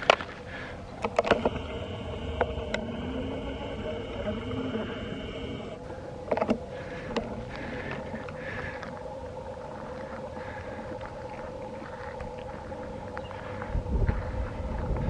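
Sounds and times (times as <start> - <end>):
faint clicks: 0.0 - 15.0
warning siren two-note chord: 1.2 - 6.1.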